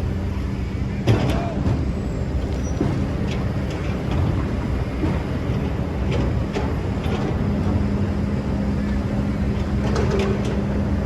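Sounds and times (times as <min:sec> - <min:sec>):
excavator engine running: 0:00.0 - 0:11.0.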